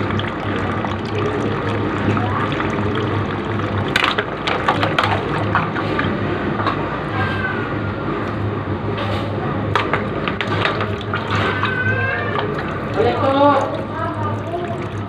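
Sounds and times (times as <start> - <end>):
water running: 0.0 - 6.9, 9.8 - 15.0.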